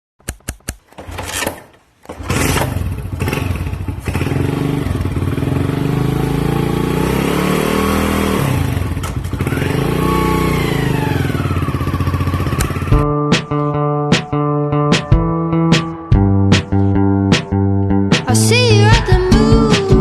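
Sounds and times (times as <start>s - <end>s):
motorcycle engine revving: 0.9s - 13.1s.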